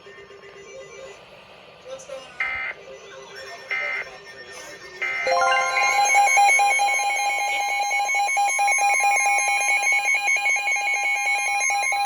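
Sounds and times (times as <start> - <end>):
two-tone emergency alert signal: 5.3 - 12.0.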